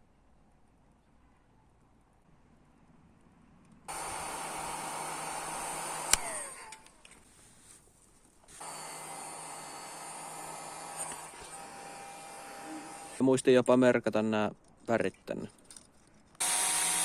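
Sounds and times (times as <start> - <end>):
heat gun blowing hot air: 3.9 - 6.8, 8.5 - 13.2, 16.4 - 17.0
heat gun switch click: 6.0 - 6.9.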